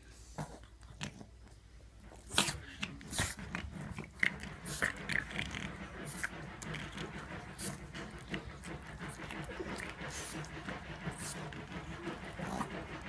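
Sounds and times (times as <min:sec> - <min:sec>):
dogs play-fighting: 0:00.4 - 0:13.0
dog snorts: 0:02.1 - 0:10.5, 0:12.2 - 0:12.9.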